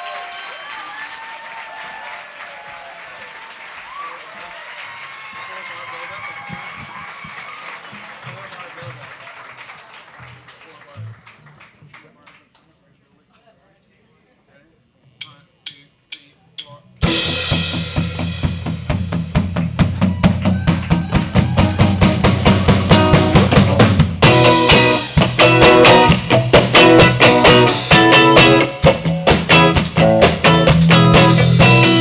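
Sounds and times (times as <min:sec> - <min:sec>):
drum kit and bass beat: 0:15.7 - 0:32.0
guitar chords: 0:21.8 - 0:32.0.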